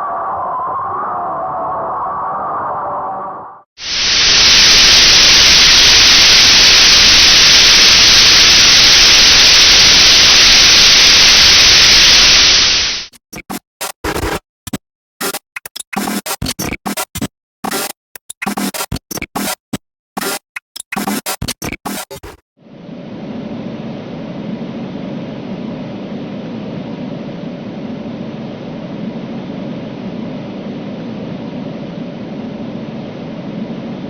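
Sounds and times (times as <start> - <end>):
choppy bursts of noise: 3.8 - 13.1
loud static-like hiss: 3.8 - 13.1.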